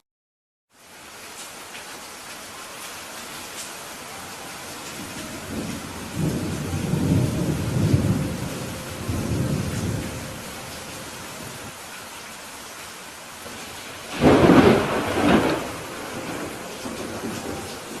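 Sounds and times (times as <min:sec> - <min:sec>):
steady rain falling: 0:00.7 - 0:18.0
thunder rumbling: 0:04.5 - 0:11.7, 0:13.4 - 0:18.0.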